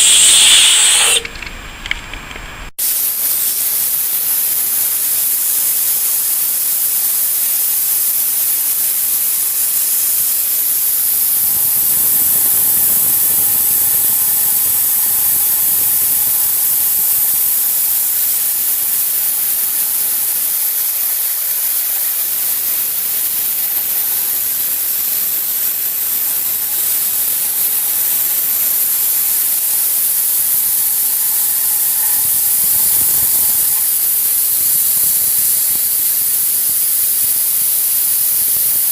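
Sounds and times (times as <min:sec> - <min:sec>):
compressed air jet hissing: 0:00.0 - 0:01.4, 0:02.8 - 0:38.9
thin whistle: 0:00.0 - 0:01.4.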